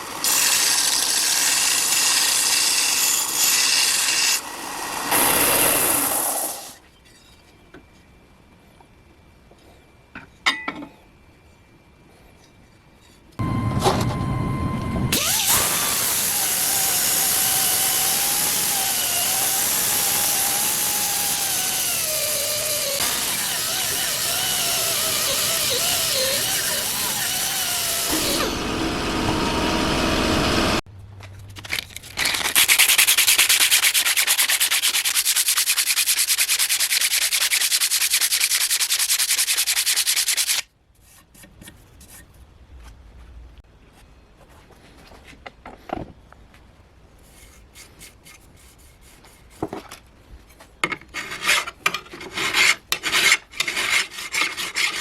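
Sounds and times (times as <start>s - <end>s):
sanding and rubbing: 32.6s - 42.2s, 47.2s - 49.7s, 51.2s - 55.0s.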